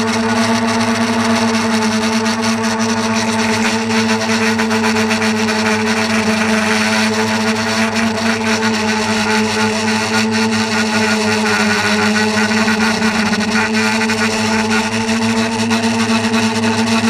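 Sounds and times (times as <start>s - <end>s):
motor hum: 0.0s - 17.0s.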